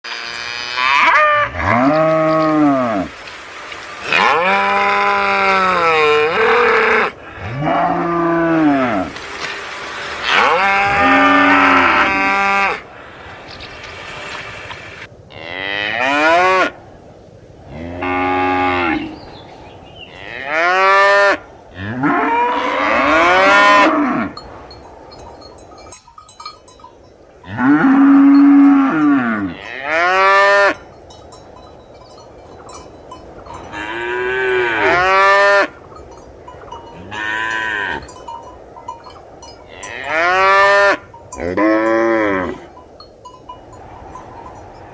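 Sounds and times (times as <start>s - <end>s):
cows mooing: 0.0s - 3.2s, 4.0s - 16.8s, 17.6s - 24.4s, 27.4s - 30.8s, 33.5s - 35.8s, 36.8s - 38.2s, 39.7s - 42.7s.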